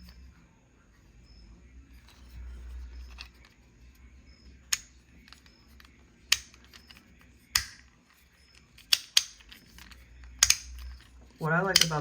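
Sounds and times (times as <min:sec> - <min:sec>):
magnetic slider snapping clicks: 0:07.5 - 0:07.9, 0:08.8 - 0:10.9, 0:11.7 - 0:12.0.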